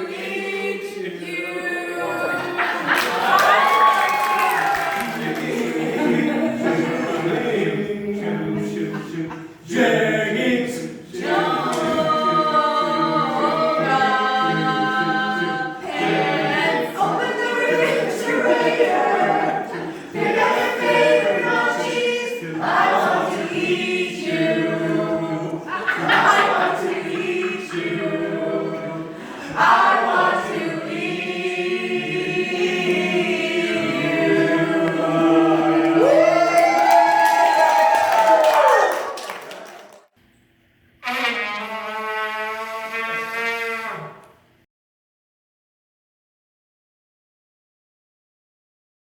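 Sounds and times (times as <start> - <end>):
vocal quartet singing in harmony: 0.0 - 3.7, 4.8 - 36.5.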